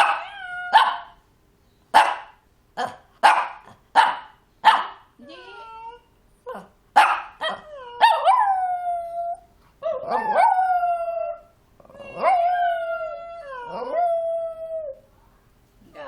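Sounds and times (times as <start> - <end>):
dog yipping: 0.0 - 1.1
dog howling: 7.5 - 15.0.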